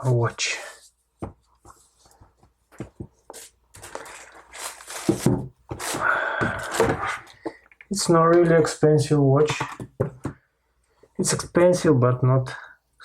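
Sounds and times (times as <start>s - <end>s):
packaging rustling and scraping: 1.5s - 7.6s.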